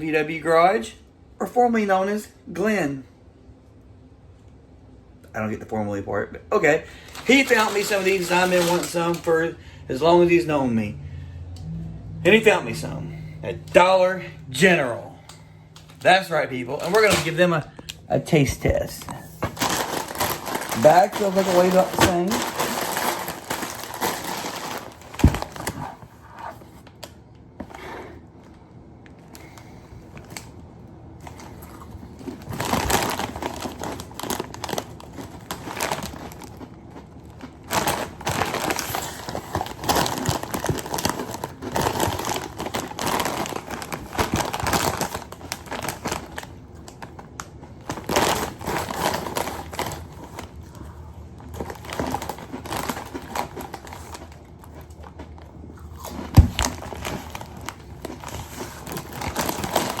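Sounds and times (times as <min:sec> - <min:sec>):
plastic chip bag crinkling: 0:06.6 - 0:09.6, 0:13.8 - 0:27.2, 0:31.2 - 1:00.0.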